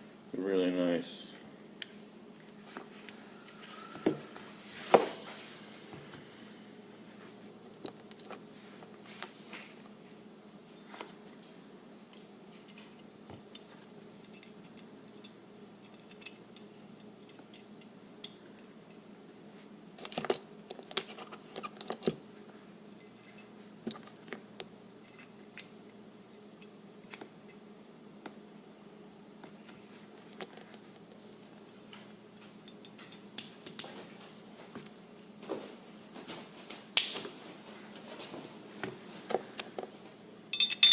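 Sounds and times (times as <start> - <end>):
pistol parts clicking and clinking: 14.2 - 18.4, 40.6 - 40.9.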